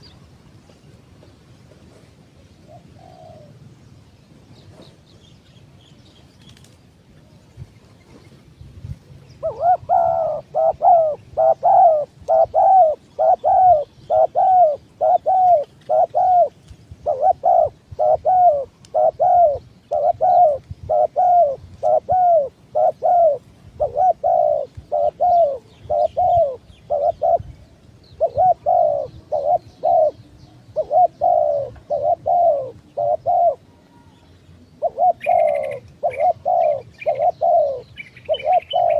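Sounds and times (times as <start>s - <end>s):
dove cooing: 2.6s - 3.6s, 9.4s - 34.2s, 34.8s - 38.9s
higher bird chirps: 22.8s - 38.9s.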